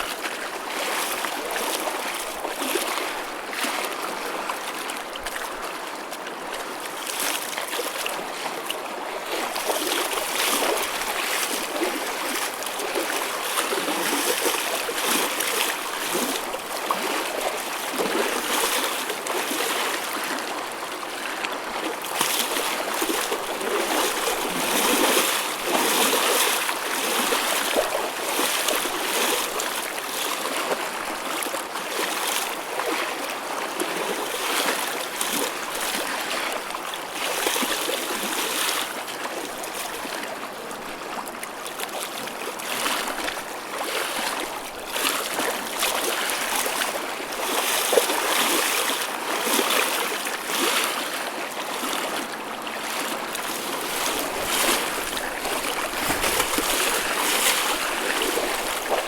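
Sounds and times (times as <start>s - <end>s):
ocean waves splashing: 52.9s - 59.0s.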